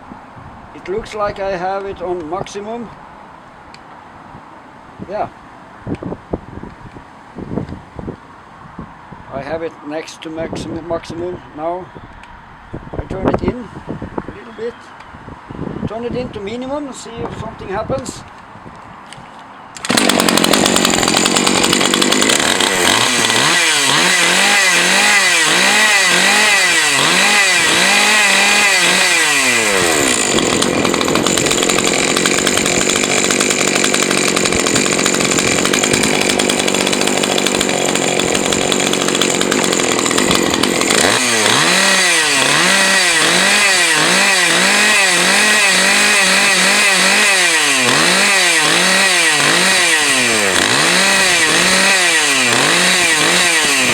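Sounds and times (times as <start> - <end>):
chainsaw engine revving: 19.8 - 53.9.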